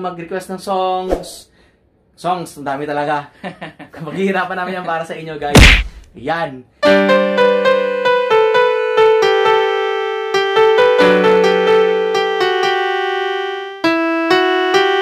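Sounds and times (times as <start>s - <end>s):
electronic keyboard piano melody: 6.8s - 15.0s.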